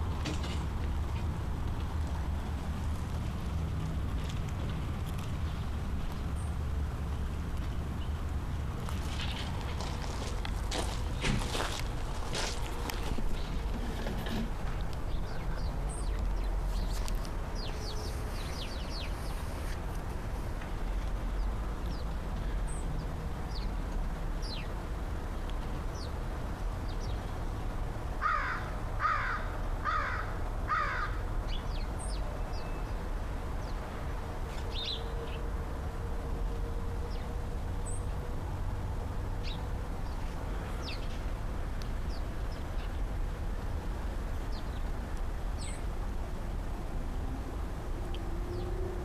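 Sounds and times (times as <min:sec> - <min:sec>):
small birds chirping: 0:14.9 - 0:19.8, 0:21.2 - 0:23.8, 0:24.4 - 0:24.8, 0:39.4 - 0:43.0, 0:45.6 - 0:45.9
crow cawing: 0:28.2 - 0:31.2.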